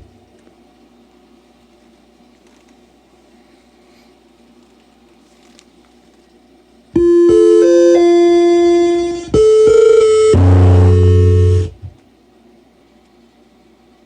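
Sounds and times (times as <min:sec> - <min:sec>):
synthesized computer chime arpeggio: 0:07.0 - 0:11.8
harsh buzzy crash sound: 0:07.0 - 0:11.9.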